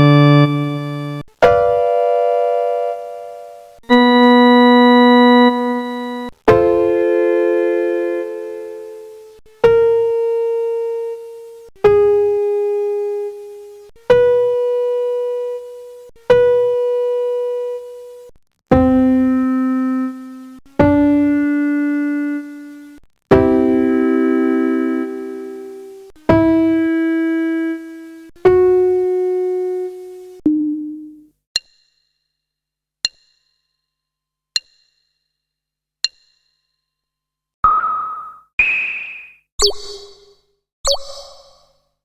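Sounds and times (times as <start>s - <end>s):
electronic organ notes: 0.0s - 30.4s.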